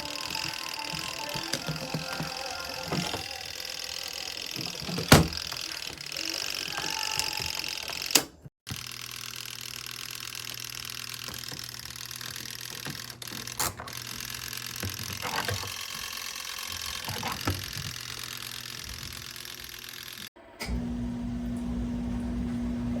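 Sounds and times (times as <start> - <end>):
washing machine running: 0.0 - 23.0.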